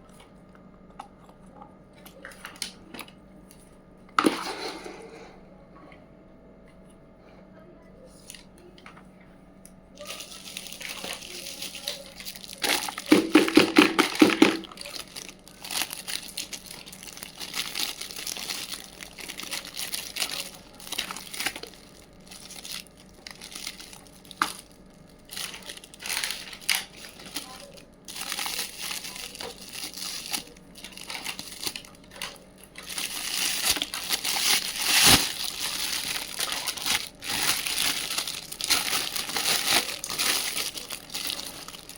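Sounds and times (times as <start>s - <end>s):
packaging crinkling: 10.0s - 41.9s.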